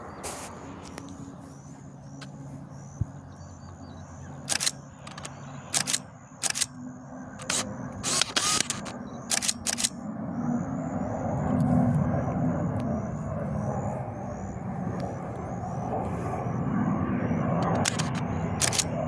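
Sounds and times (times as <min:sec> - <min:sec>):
turboprop aircraft approaching: 0:00.0 - 0:19.0
camera shutter clicking: 0:04.5 - 0:06.7, 0:07.4 - 0:10.0, 0:17.6 - 0:18.9.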